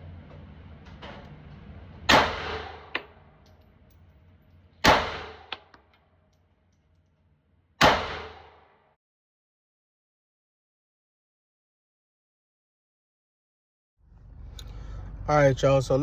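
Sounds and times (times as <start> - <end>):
pistol shots with echo: 2.1 - 3.2, 4.8 - 5.7, 7.8 - 8.8.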